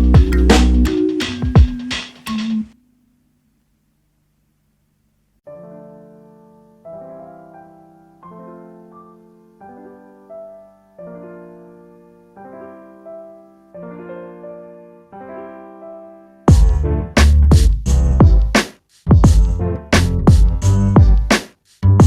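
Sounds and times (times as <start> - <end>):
soft piano chords: 0.0 - 1.8, 5.5 - 17.4.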